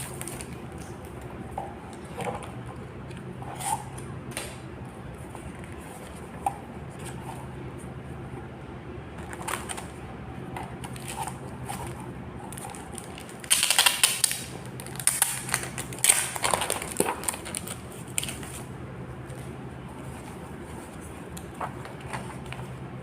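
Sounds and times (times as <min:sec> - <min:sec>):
steady low hum: 0:00.0 - 0:23.0
packaging clicks and crinkles: 0:09.2 - 0:09.9, 0:10.8 - 0:18.7.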